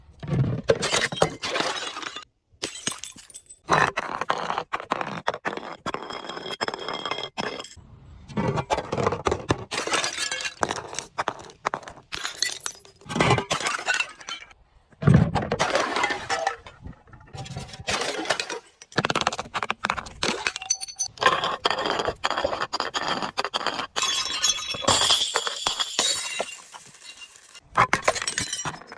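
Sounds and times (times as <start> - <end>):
glass bottles breaking and crushing: 0.7 - 3.7, 9.4 - 11.2, 12.1 - 14.6, 15.4 - 19.0, 20.2 - 21.2, 24.0 - 28.9
glass shards clinking: 20.5 - 21.1, 24.0 - 28.9.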